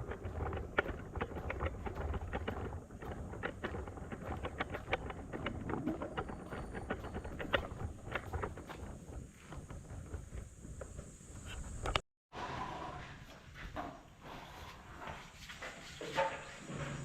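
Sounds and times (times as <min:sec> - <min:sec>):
wind rumble on microphone: 0:00.0 - 0:12.0.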